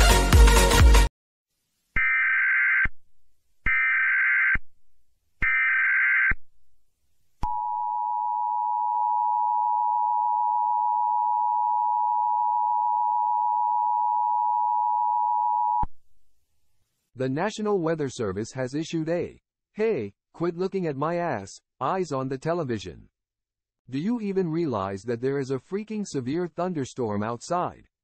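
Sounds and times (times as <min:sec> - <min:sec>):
music: 0:00.0 - 0:01.1.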